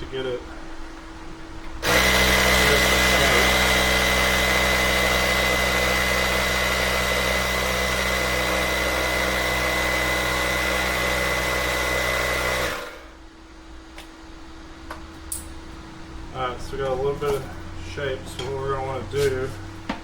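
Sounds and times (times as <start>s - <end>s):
air compressor motor hum: 0.0s - 14.9s.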